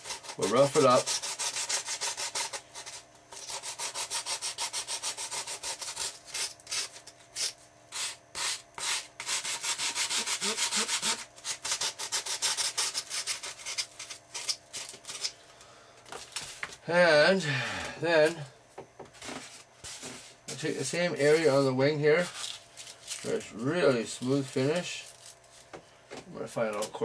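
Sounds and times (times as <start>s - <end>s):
sandpaper rubbing on foam: 0.0s - 15.3s.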